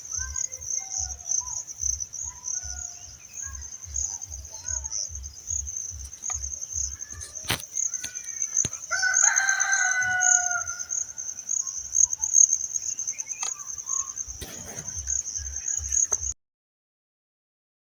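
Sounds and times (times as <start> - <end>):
high insect drone: 0.0 - 16.4
rooster crowing: 8.2 - 11.3.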